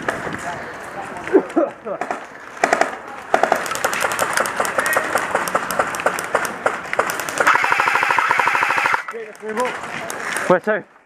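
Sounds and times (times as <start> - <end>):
airsoft guns firing: 2.0 - 9.2.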